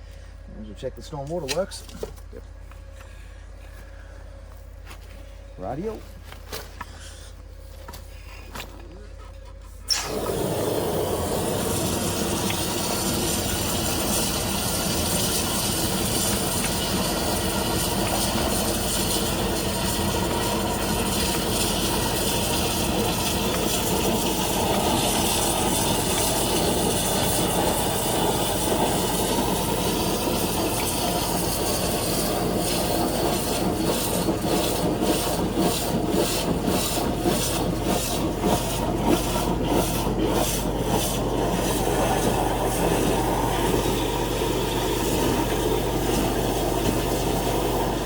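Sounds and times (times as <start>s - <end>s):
high-pressure water hiss: 9.9s - 35.4s
petrol engine running: 9.9s - 48.0s
pulsing hiss: 9.9s - 48.0s.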